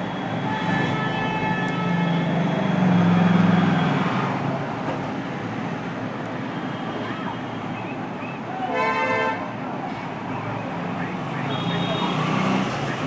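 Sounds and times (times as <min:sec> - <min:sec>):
road traffic passing: 0:00.0 - 0:13.0
vehicle horn or siren tone: 0:11.0 - 0:12.3.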